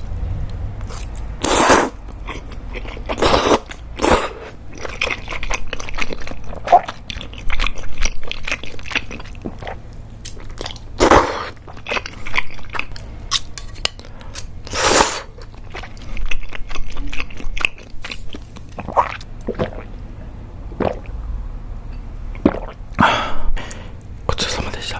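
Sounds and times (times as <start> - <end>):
wet chewing sounds: 0.8 - 19.9.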